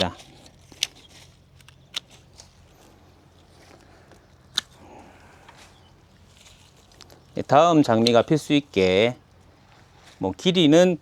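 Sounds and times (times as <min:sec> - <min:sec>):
pruning shears snipping: 0:00.0 - 0:05.8, 0:07.8 - 0:08.6
rustling foliage: 0:00.0 - 0:11.0.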